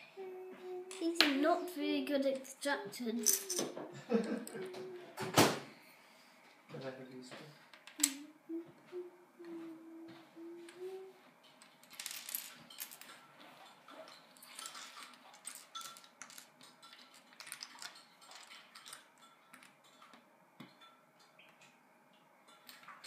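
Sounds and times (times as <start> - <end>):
person humming: 0.0 - 1.8, 3.0 - 5.6, 8.0 - 11.2.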